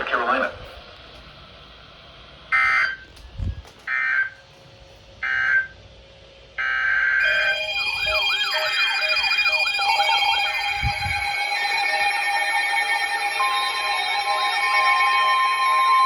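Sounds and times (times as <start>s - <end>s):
wailing siren-like sweep: 6.6s - 16.0s
digital data tone bursts: 7.2s - 16.0s
steady alert tones: 7.2s - 16.0s.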